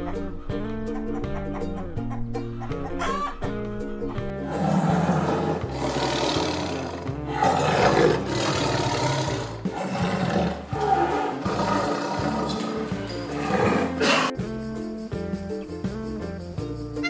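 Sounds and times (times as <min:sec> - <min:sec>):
background music with bass line: 0:00.0 - 0:17.0
large animal calling roughly: 0:04.4 - 0:14.4.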